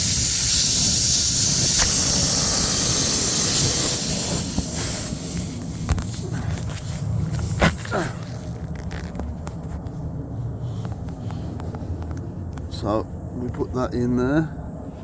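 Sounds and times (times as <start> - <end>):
loud steady hiss: 0.0 - 8.2.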